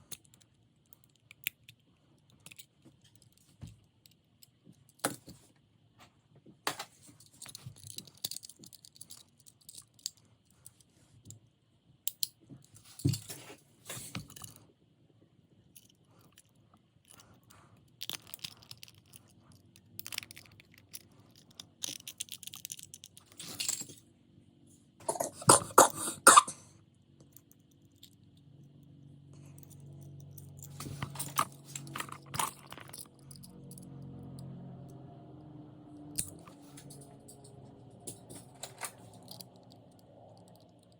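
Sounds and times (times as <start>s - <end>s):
toy cars clicking and rattling: 0.0s - 5.2s, 6.7s - 10.9s, 15.8s - 24.0s, 29.6s - 34.5s, 36.1s - 40.9s
low steady hum: 0.0s - 40.9s.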